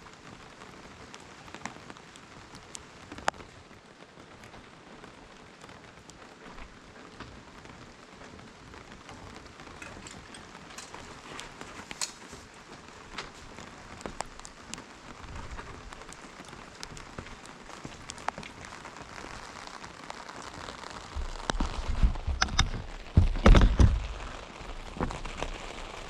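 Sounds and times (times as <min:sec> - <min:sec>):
rain patter: 0:00.0 - 0:26.0
heavy thuds: 0:21.2 - 0:24.4.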